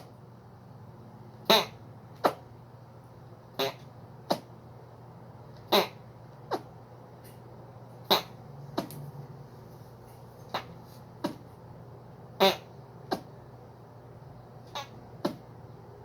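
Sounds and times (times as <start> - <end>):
person making fake fart sounds: 1.5 - 2.4, 3.6 - 4.4, 5.7 - 6.6.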